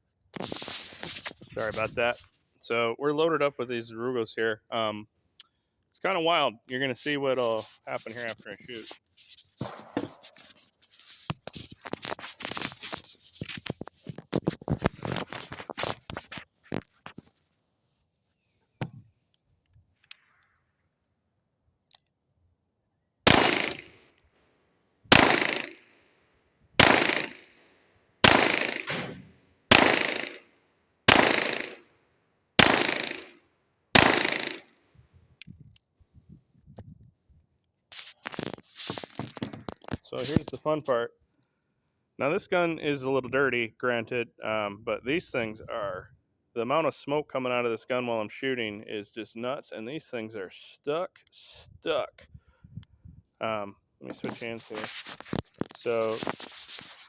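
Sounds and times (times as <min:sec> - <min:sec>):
small clicks and rustling: 0:07.4 - 0:20.8, 0:36.6 - 0:40.6, 0:54.1 - 0:57.0
revolver shots with echo: 0:23.3 - 0:23.8, 0:25.1 - 0:25.8, 0:26.8 - 0:27.4, 0:28.3 - 0:30.4, 0:31.1 - 0:31.7, 0:32.6 - 0:33.2, 0:34.0 - 0:34.7.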